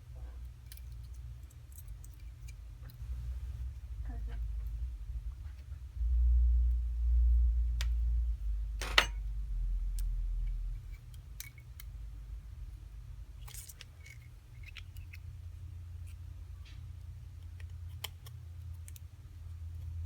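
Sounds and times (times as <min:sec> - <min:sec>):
low rumble: 0:03.0 - 0:13.4.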